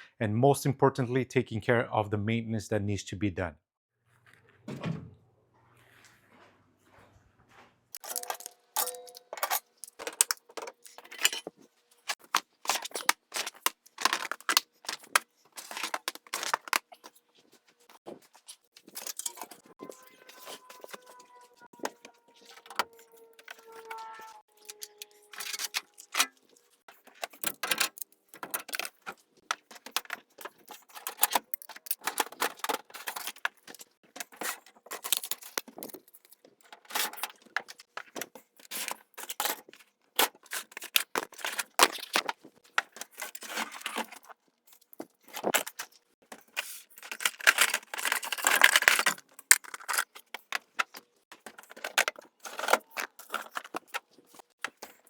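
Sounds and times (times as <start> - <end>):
metal parts clinking: 8.0 - 17.0, 18.8 - 39.6, 46.4 - 55.0.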